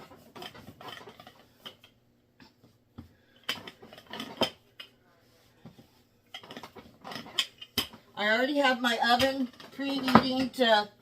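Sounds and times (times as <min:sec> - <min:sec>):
kitchen utensils clattering: 0:03.5 - 0:04.7, 0:06.4 - 0:08.0.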